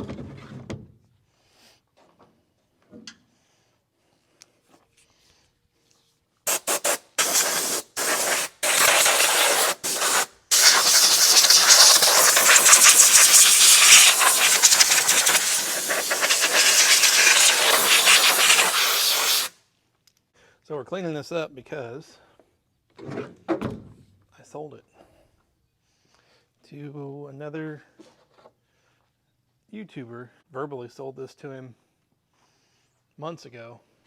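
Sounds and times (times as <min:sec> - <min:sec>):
pressurised spray hissing: 0:06.5 - 0:19.5.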